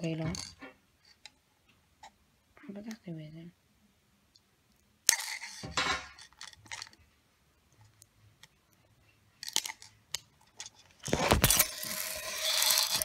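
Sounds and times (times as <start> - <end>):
packaging crinkling and rustling: 10.9 - 13.0.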